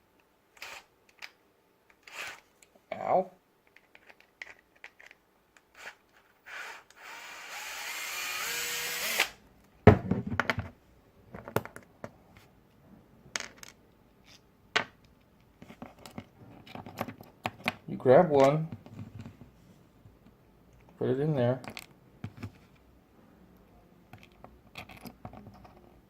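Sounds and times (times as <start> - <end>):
electric screwdriver running: 0.6 - 0.8, 2.0 - 2.4, 5.8 - 9.4
small clicks and taps of parts: 3.6 - 5.7, 24.1 - 25.9.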